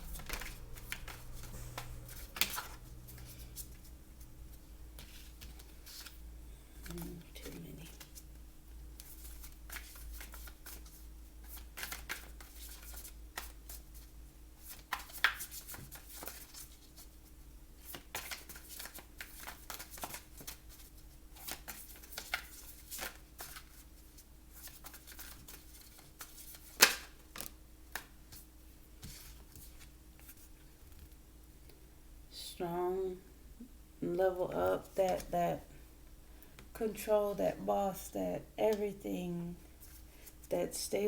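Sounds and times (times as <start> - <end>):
cards shuffling and tapping: 0.0 - 4.0, 5.0 - 6.2, 9.0 - 17.1, 17.8 - 31.2.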